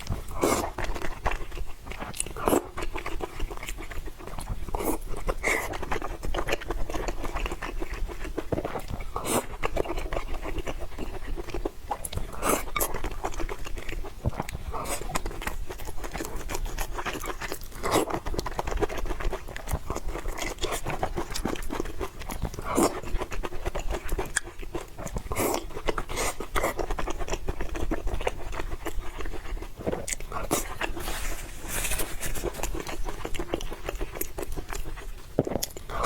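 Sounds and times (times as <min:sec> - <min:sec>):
chewing and crunching: 0:00.0 - 0:36.0
wet mouth sounds: 0:00.0 - 0:36.0.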